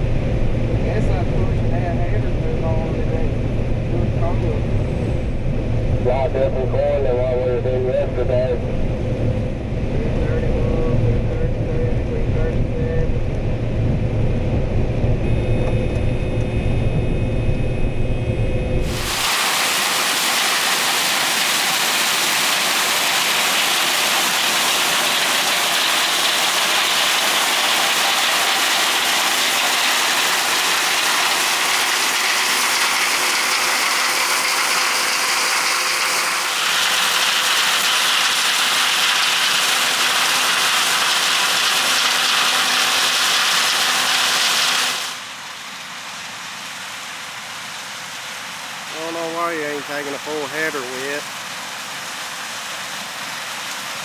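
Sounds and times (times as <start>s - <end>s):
combine harvester engine drone: 0.0s - 54.0s
loud steady hissing rush: 18.8s - 54.0s.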